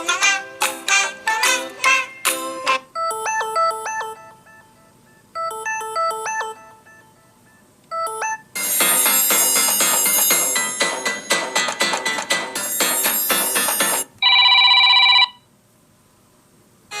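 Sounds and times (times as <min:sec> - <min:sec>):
phone ringtone melody: 0:02.4 - 0:15.4
fuller phone ringtone: 0:02.6 - 0:15.5.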